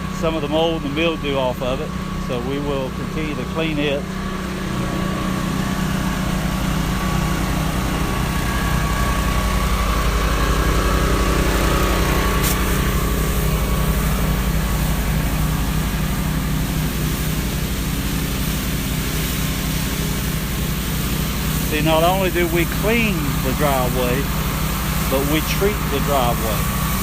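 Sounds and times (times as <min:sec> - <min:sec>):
gas engine running: 0:00.0 - 0:27.0
steady hiss: 0:11.5 - 0:27.0.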